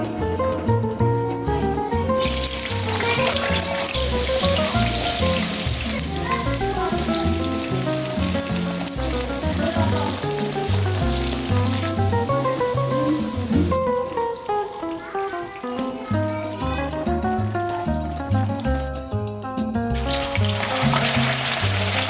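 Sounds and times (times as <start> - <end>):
background music: 0.0 - 22.0
food sizzling in a hot pan: 2.1 - 19.1, 19.9 - 22.0.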